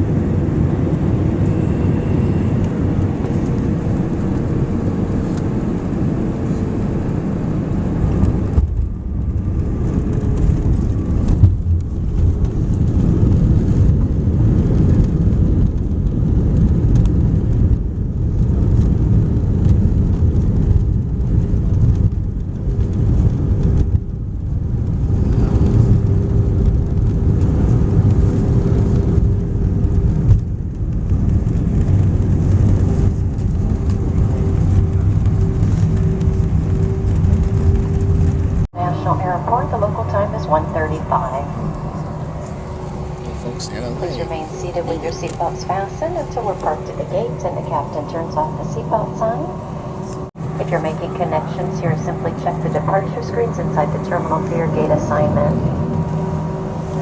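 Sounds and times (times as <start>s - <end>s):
airplane cabin engine rumble: 0.0s - 57.0s
steady engine whine: 0.0s - 57.0s.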